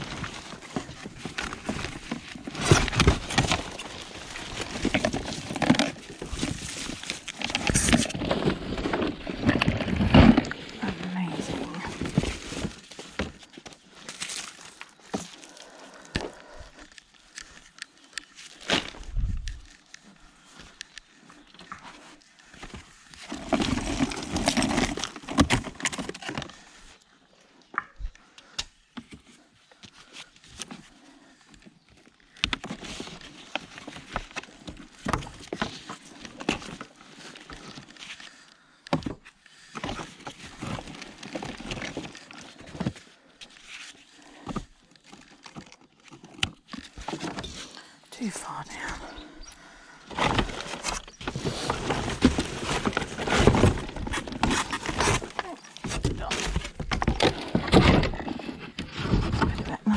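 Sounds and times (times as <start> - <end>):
debris scraping and shifting: 0.0 - 27.0, 32.3 - 59.9.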